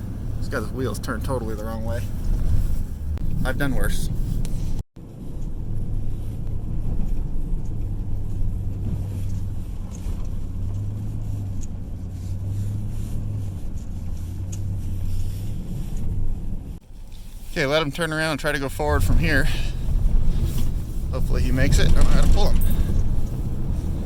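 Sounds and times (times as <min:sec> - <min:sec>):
vehicle engine droning: 0:00.0 - 0:24.0.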